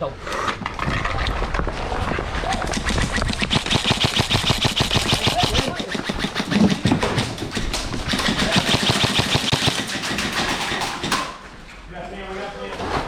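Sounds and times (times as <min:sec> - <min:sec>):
airsoft rifles firing full-auto: 0:02.8 - 0:11.4.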